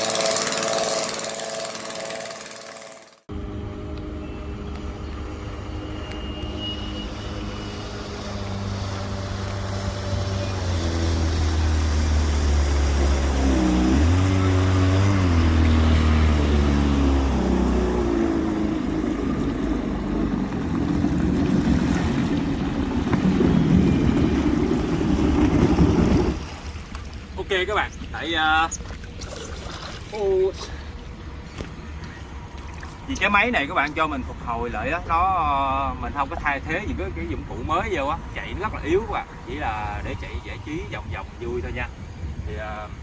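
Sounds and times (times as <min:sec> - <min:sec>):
boat engine running: 0:00.0 - 0:43.0
rushing water: 0:05.2 - 0:43.0
wind noise: 0:19.2 - 0:26.8, 0:36.2 - 0:43.0.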